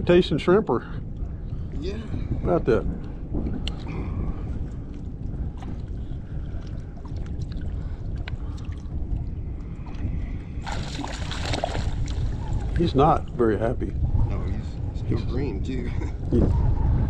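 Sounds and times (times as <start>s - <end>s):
wind buffeting microphone: 0.0s - 17.0s
water splashing: 9.6s - 13.4s.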